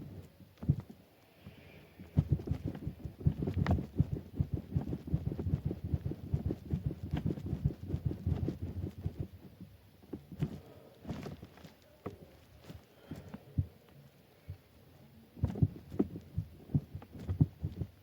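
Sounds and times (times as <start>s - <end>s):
dull thumps bouncing on bed: 0.6s - 0.9s, 2.1s - 11.6s, 15.4s - 18.0s.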